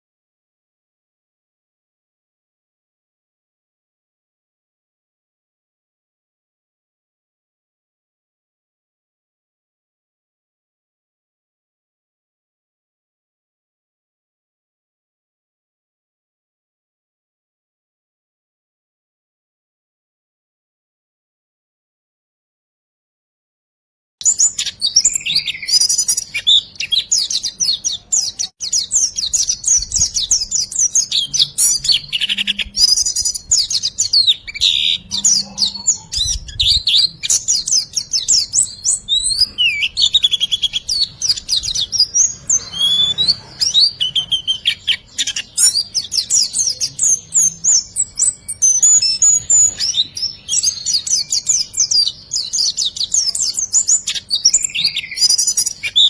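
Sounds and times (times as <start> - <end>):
songbird rapid chirps and trills: 24.2 - 56.0.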